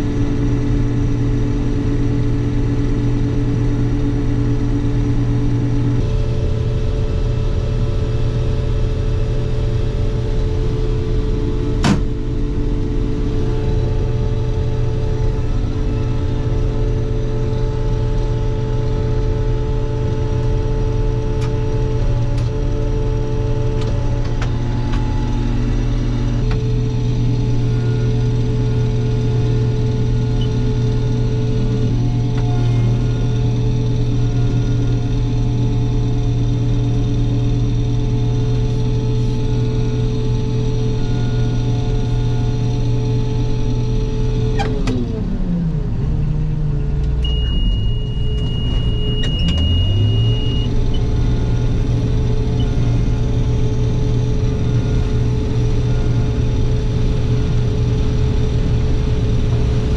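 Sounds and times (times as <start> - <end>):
combine harvester drone: 0.0 - 59.9.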